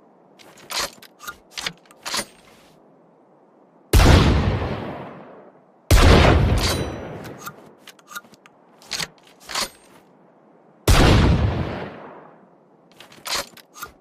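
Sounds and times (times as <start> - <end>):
shotgun shots echoing: 5.9 - 7.4, 10.9 - 12.2.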